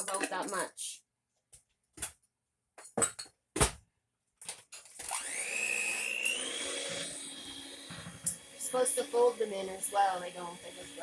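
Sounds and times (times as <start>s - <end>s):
electric mixer whining: 5.0s - 11.0s.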